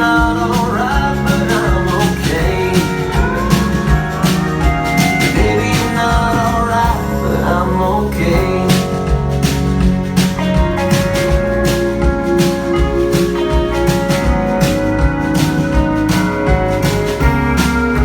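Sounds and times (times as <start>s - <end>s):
country rock band music: 0.0s - 18.0s.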